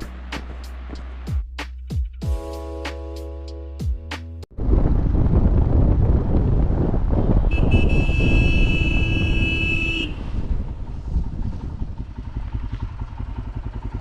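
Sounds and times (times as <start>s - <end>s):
vehicle horn blast: 7.5s - 10.5s
vehicle engine running: 8.8s - 14.0s.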